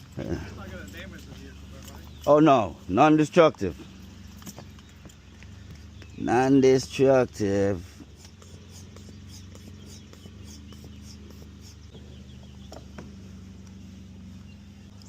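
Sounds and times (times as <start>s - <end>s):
light clicks and scratching: 0.0s - 2.6s
steady low hum: 0.0s - 15.0s.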